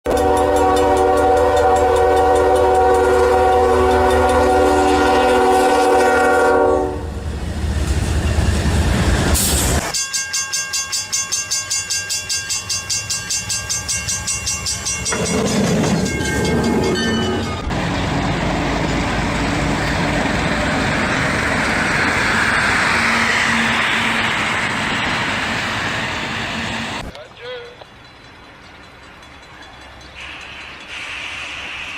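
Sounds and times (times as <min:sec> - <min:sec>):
pulsing train horn: 0:00.1 - 0:07.2
train horn chord: 0:00.1 - 0:07.2
moving train rushing: 0:00.1 - 0:31.9.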